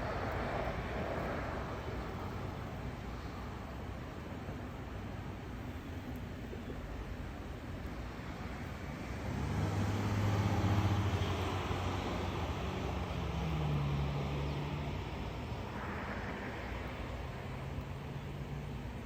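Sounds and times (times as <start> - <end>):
outdoor background hiss: 0.0 - 19.0
vehicle engine passing: 9.2 - 18.5.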